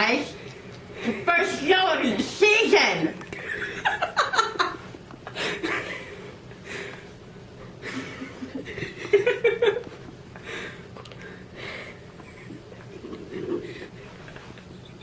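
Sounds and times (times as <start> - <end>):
people laughing: 3.3 - 6.2, 7.8 - 10.0.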